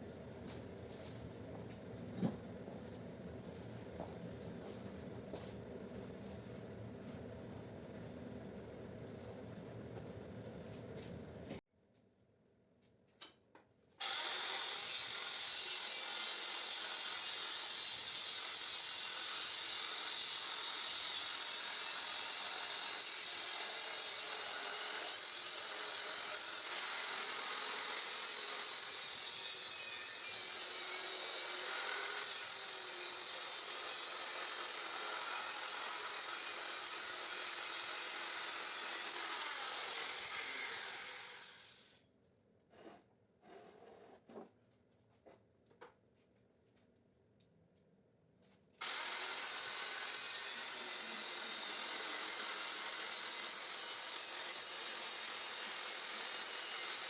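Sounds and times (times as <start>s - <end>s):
power saw grinding through steel: 14.0s - 42.0s, 48.8s - 57.0s.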